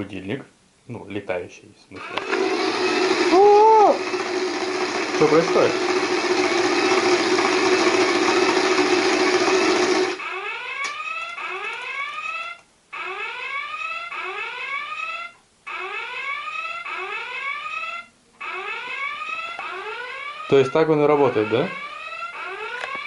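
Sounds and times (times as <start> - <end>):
propeller whirring: 2.2 - 10.2.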